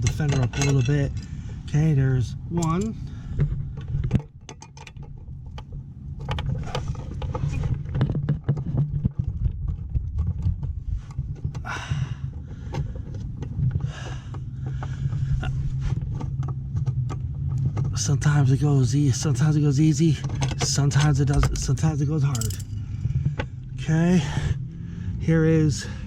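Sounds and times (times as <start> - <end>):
metal tools clinking on metal: 0.0 - 3.1, 17.9 - 23.0
steady low hum: 0.0 - 26.0.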